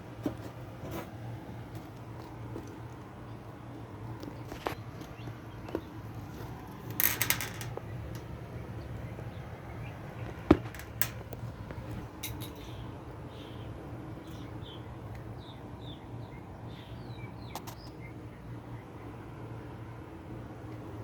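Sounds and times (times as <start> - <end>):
steady low hum: 0.0 - 21.0
metal parts clinking: 6.9 - 8.3, 10.6 - 11.2, 12.2 - 12.8.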